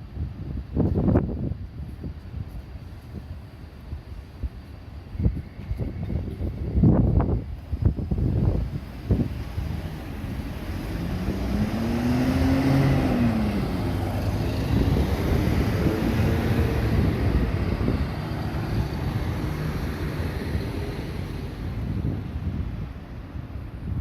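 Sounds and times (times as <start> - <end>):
road noise: 0.0 - 24.0
wind buffeting microphone: 0.0 - 24.0
bus engine passing: 6.4 - 24.0.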